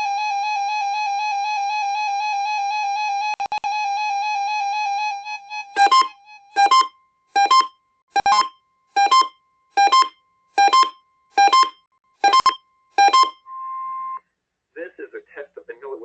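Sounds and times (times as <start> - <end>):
short double beeps: 5.8 - 13.5
steady buzzy alert tone: 5.8 - 14.2.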